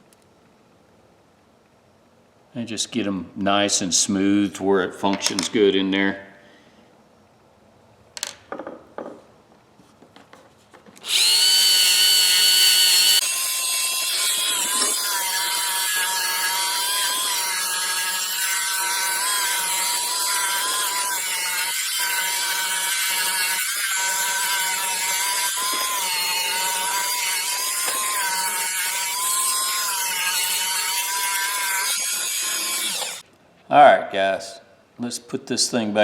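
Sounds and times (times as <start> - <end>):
rotary tool whining: 11.0 - 33.2.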